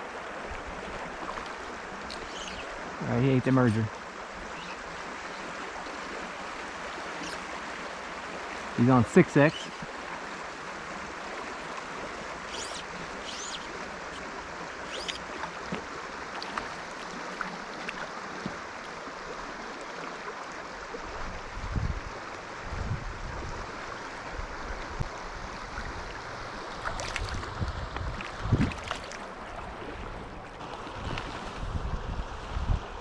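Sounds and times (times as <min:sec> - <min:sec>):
stream water flowing: 0:00.0 - 0:33.0
wind buffeting microphone: 0:21.3 - 0:23.7, 0:27.0 - 0:28.9, 0:31.0 - 0:33.0.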